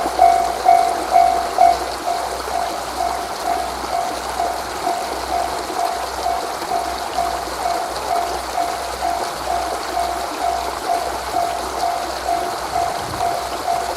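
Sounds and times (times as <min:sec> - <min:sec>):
level-crossing warning bell: 0:00.0 - 0:13.9
steady rushing noise: 0:12.6 - 0:13.9.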